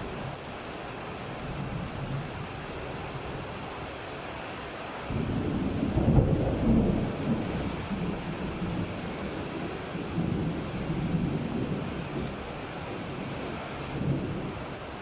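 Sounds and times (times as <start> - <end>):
rain hiss: 0.0 - 15.0
thunder rumbling: 5.1 - 13.2, 13.9 - 14.7.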